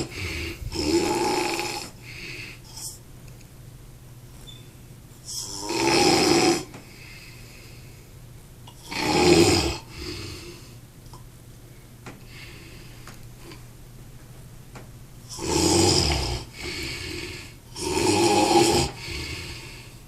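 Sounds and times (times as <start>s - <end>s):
faint breath: 0.0s - 0.8s, 2.0s - 3.0s, 6.8s - 8.2s, 11.7s - 13.6s, 19.0s - 20.0s
person snoring: 0.0s - 3.0s, 5.3s - 6.7s, 8.8s - 10.7s, 15.3s - 20.0s.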